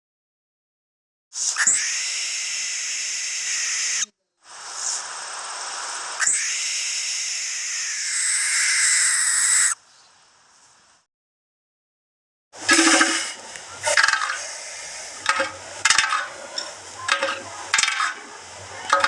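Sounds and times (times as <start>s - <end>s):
barn owl screeching: 6.2s - 9.8s.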